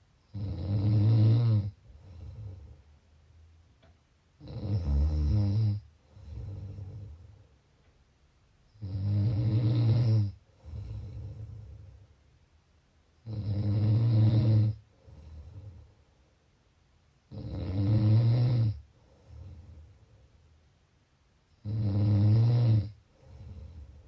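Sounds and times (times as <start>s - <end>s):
person snoring: 0.3s - 2.8s, 4.4s - 7.3s, 8.8s - 11.9s, 13.2s - 15.8s, 17.3s - 19.8s, 21.6s - 24.0s
quiet breath: 1.4s - 3.9s, 5.2s - 9.2s, 10.1s - 12.4s, 14.4s - 16.7s, 18.7s - 20.8s, 22.8s - 24.0s.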